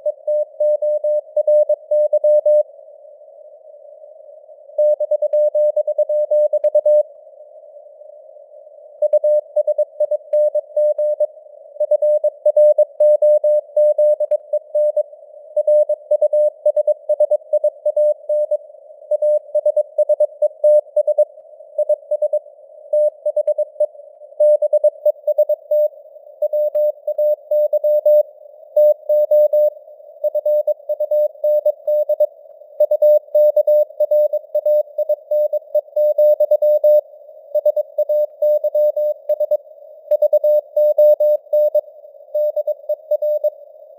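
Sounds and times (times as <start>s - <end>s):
faint radio noise hiss: 2.6s - 4.8s, 7.0s - 12.4s, 21.2s - 36.2s, 36.8s - 43.9s.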